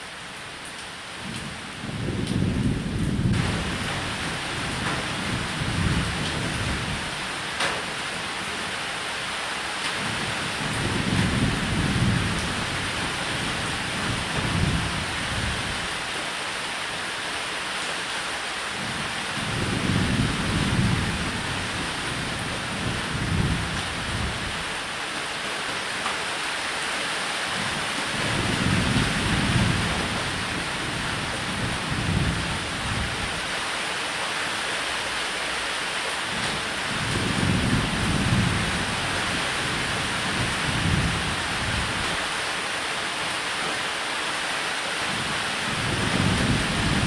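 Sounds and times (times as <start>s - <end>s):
heavy rain on a roof: 0.0s - 47.0s
low thunder rumbles: 1.8s - 7.1s, 28.1s - 33.5s, 36.4s - 42.2s, 45.7s - 47.0s.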